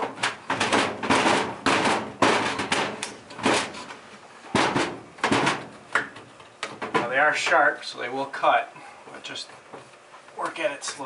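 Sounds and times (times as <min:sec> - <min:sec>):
thin sheet metal bangs and rattles: 0:00.0 - 0:03.9, 0:04.5 - 0:07.4.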